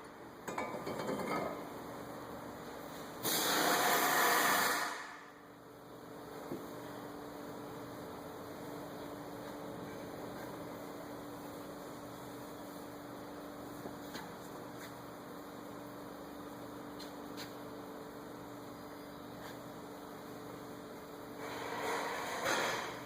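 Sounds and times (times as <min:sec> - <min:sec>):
electrical hum: 0:00.0 - 0:23.0.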